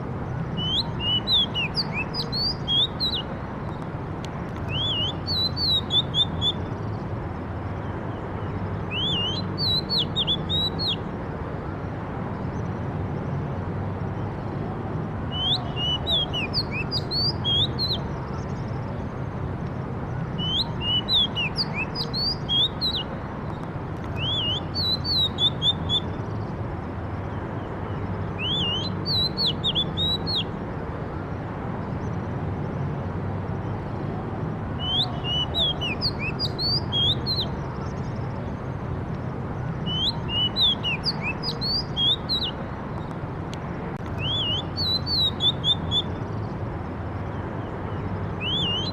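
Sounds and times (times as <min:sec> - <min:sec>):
songbird singing: 0:00.0 - 0:48.9.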